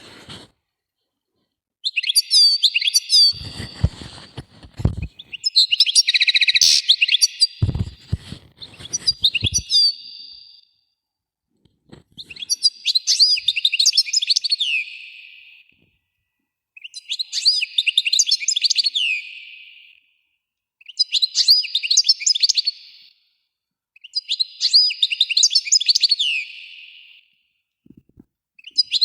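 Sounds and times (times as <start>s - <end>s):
small birds chirping: 1.8s - 10.6s, 12.1s - 15.7s, 28.6s - 29.0s.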